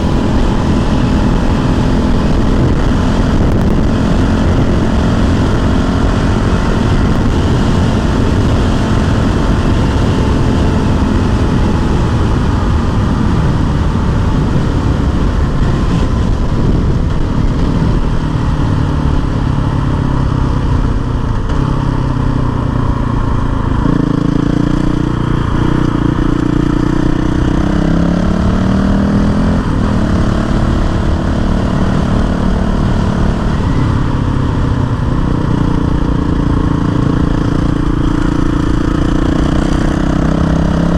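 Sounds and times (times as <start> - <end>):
riding noise rush: 0.0 - 19.4, 20.8 - 28.2
motorcycle engine running: 0.0 - 40.9.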